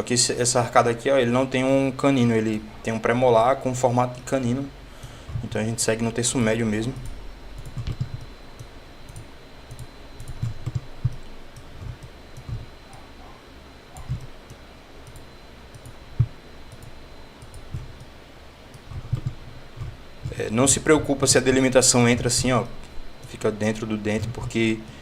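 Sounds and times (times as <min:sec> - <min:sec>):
soft low thumps: 0:05.2 - 0:05.6, 0:11.8 - 0:12.7, 0:16.2 - 0:16.4, 0:18.9 - 0:20.4
computer mouse clicking: 0:07.0 - 0:13.0, 0:14.0 - 0:18.1, 0:18.7 - 0:20.4, 0:24.2 - 0:24.6.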